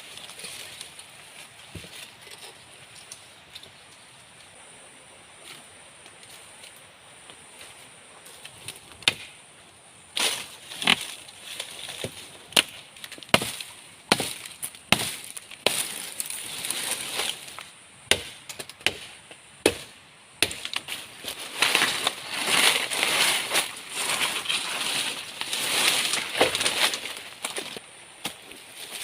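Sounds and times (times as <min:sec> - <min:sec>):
bladed tool chopping wood: 0:12.0 - 0:15.9, 0:18.1 - 0:20.9.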